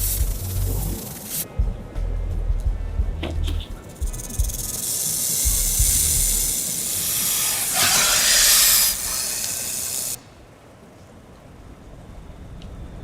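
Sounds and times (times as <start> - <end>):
hiss: 0.0 - 1.5, 3.8 - 10.3
low rumble: 0.0 - 4.8.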